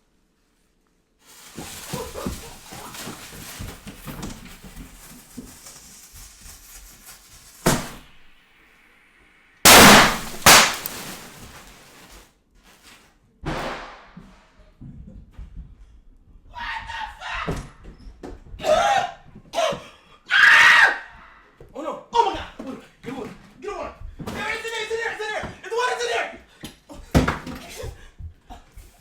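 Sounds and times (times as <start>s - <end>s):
firework hissing and crackling: 7.2s - 12.2s
firework bangs: 7.7s - 8.2s, 9.7s - 12.0s
loud firework blasts: 7.7s - 8.2s, 9.7s - 12.0s.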